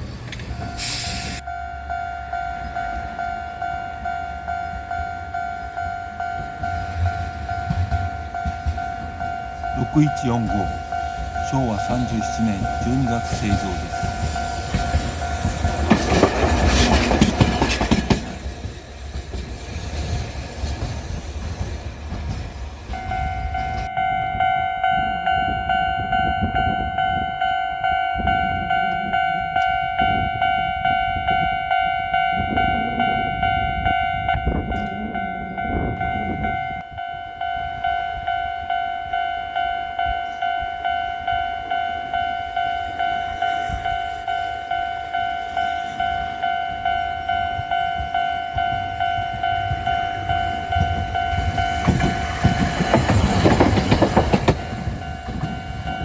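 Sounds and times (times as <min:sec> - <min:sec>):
passing traffic rumble: 0:00.0 - 0:23.9
tram rumbling and clattering: 0:00.0 - 0:56.0
level crossing warning bell: 0:00.5 - 0:18.6, 0:22.9 - 0:56.0.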